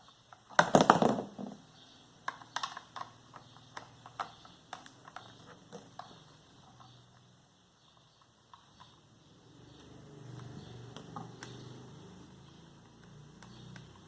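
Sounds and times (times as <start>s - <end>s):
clatter of handling plastic: 0.5s - 1.6s
screwdriver light clicks and taps: 12.8s - 14.0s.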